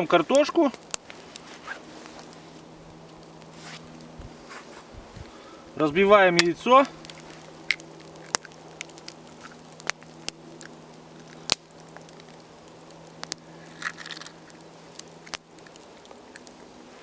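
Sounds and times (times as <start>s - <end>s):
eggshell cracking: 6.4s - 16.8s.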